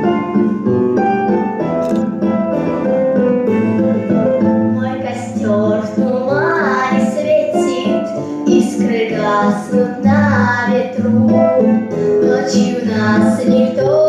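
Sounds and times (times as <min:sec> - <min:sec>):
girl singing with vibrato: 0:04.8 - 0:14.0.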